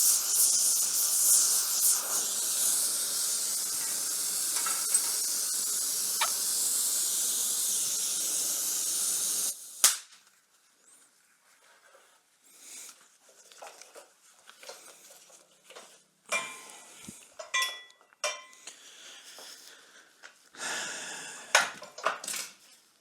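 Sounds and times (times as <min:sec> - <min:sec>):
metal clinking on cast iron grate: 0:04.6 - 0:05.2.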